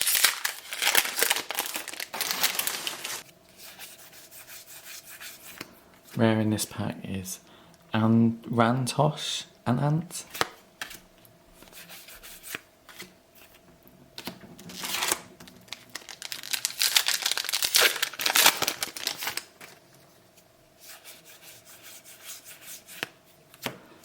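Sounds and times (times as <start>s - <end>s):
wrapper crinkling and tearing: 0.0s - 3.2s, 14.2s - 19.8s.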